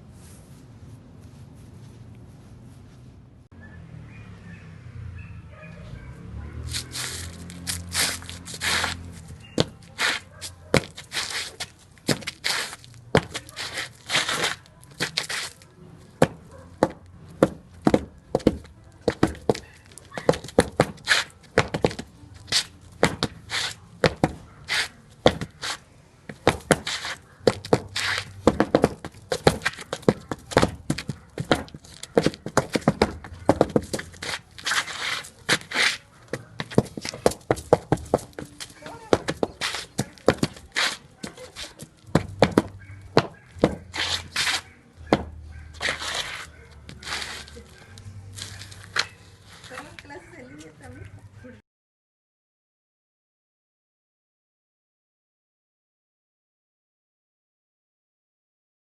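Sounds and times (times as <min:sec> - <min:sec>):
rough rustling or scraping strokes: 0:00.0 - 0:03.5, 0:06.6 - 0:15.7, 0:23.4 - 0:24.0, 0:24.7 - 0:28.4, 0:33.4 - 0:36.1, 0:43.8 - 0:44.7, 0:45.8 - 0:49.8.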